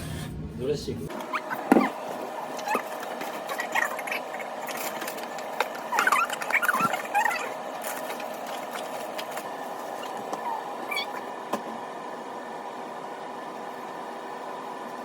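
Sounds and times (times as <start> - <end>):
dog whining and squeaking: 1.2 - 2.0, 2.6 - 4.8, 5.9 - 7.6, 9.9 - 11.3.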